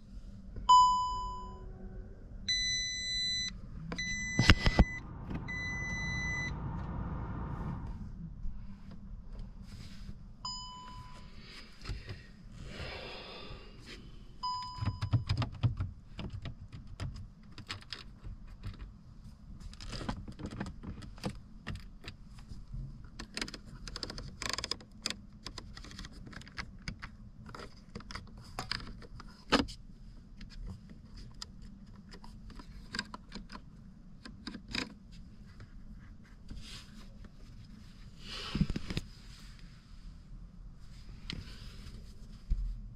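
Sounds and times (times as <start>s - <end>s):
low hum: 0.0s - 14.8s
short electronic beeps: 0.7s - 1.7s, 2.5s - 6.7s
light clicks and rattles: 19.6s - 29.8s.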